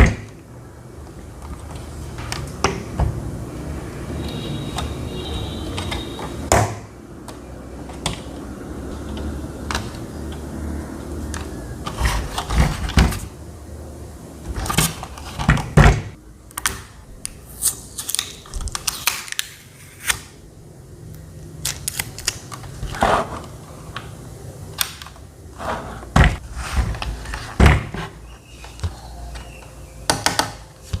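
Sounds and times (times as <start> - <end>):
fan controls clicking and knocking: 0.0 - 3.3, 5.6 - 10.6, 30.0 - 31.0.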